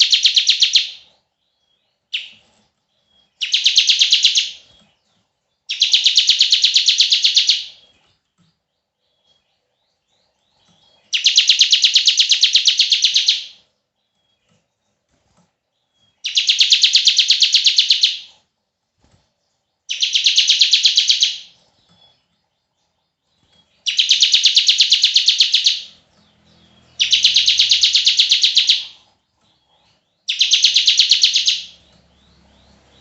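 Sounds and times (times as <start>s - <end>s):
bird high trilling call: 0.0s - 1.1s, 2.1s - 2.4s, 3.2s - 4.7s, 5.7s - 7.9s, 10.8s - 13.6s, 16.1s - 18.3s, 19.9s - 22.2s, 23.6s - 29.1s, 29.7s - 33.0s.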